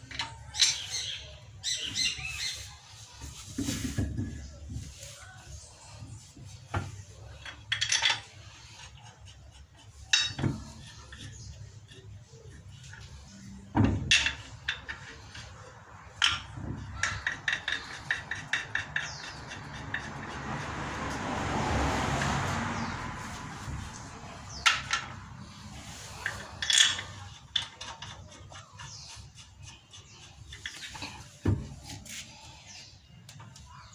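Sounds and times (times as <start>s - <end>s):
metal tools clinking and knocking: 6.8s - 8.6s, 10.1s - 11.3s, 12.6s - 20.4s, 24.5s - 28.6s.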